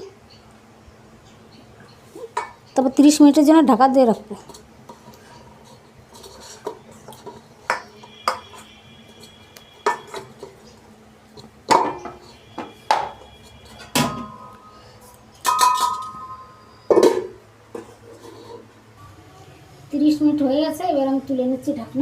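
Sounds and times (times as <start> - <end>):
metal lid knocking against bowl: 11.7 - 13.2, 15.4 - 17.9.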